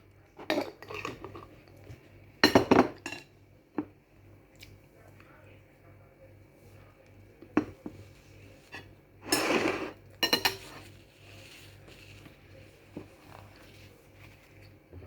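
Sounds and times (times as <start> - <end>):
cutlery clinking on a plate: 8.8 - 10.8.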